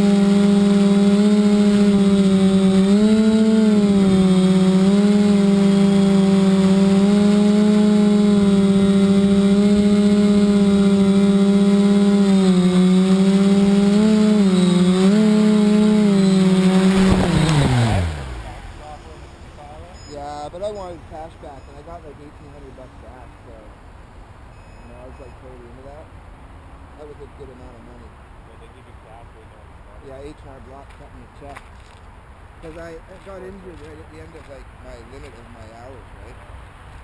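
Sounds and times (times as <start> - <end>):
drone motors humming: 0.0 - 23.3.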